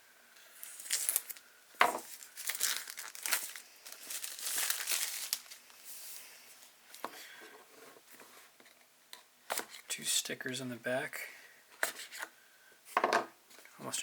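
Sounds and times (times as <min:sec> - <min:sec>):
packaging crinkling and tearing: 0:00.6 - 0:05.8.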